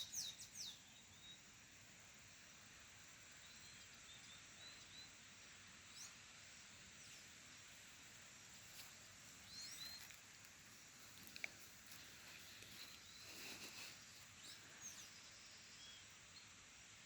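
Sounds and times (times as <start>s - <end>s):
birds chirping: 0.0s - 1.5s, 9.3s - 16.6s
steady hiss: 0.0s - 17.0s.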